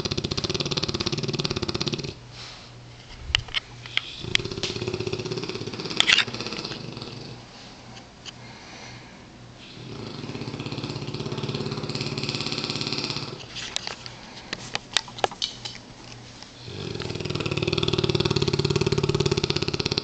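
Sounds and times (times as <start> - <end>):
dog snoring: 0.0 - 2.2, 4.1 - 7.4, 9.6 - 13.5, 16.6 - 20.0.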